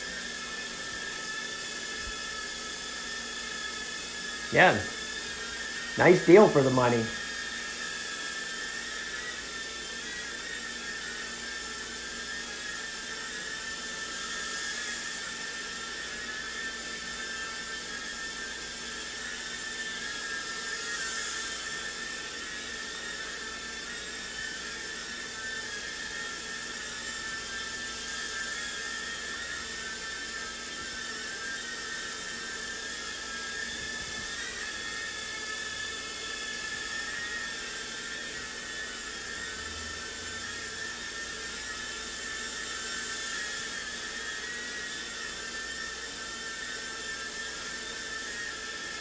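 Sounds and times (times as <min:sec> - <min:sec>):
quadcopter propellers whining: 0:04.5 - 0:07.2, 0:27.2 - 0:48.6.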